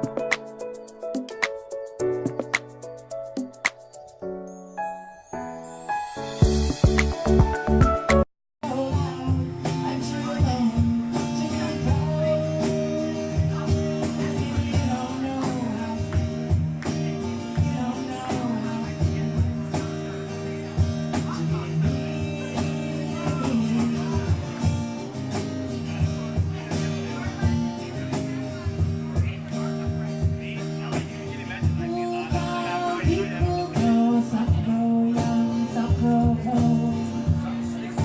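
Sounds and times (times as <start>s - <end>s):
guitar music with beat: 0.0s - 4.5s, 6.2s - 38.0s
person singing: 6.4s - 16.2s, 17.5s - 19.2s, 21.2s - 24.6s, 31.8s - 38.0s.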